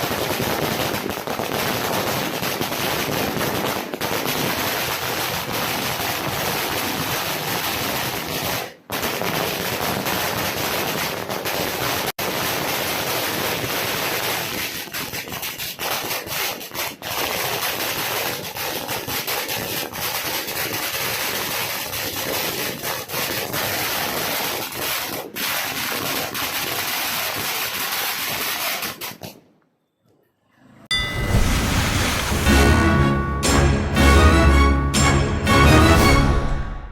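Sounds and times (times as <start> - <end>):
firecracker string crackling: 30.9 - 36.9.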